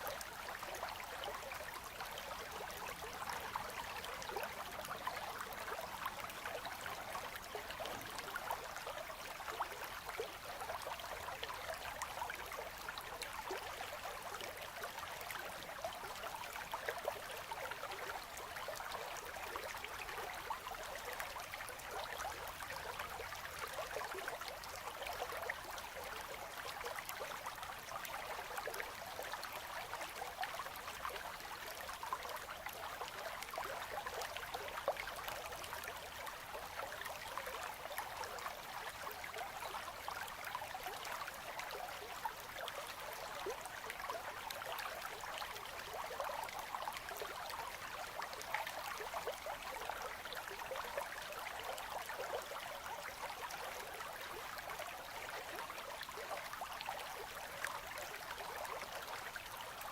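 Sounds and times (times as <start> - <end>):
river trickling and gurgling: 0.0 - 59.9.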